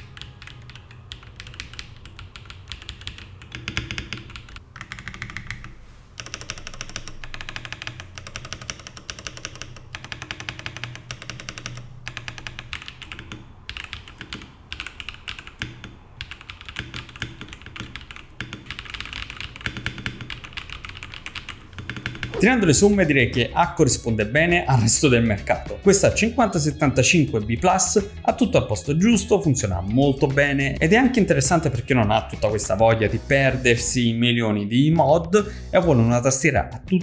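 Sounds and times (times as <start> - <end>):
mechanical keyboard typing: 0.0 - 22.4.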